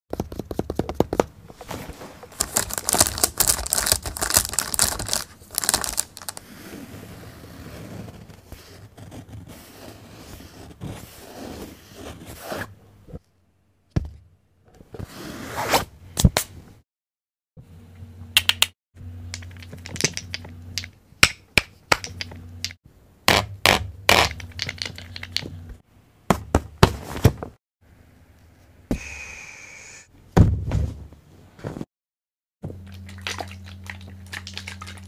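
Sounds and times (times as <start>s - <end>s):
tearing crumpling noise: 1.6s - 6.8s.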